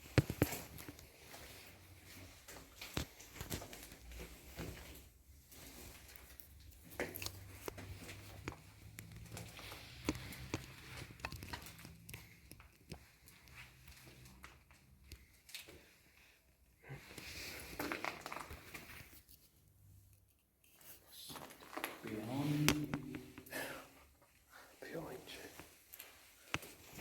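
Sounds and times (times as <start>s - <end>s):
scuffs and small clicks: 0.0s - 15.9s.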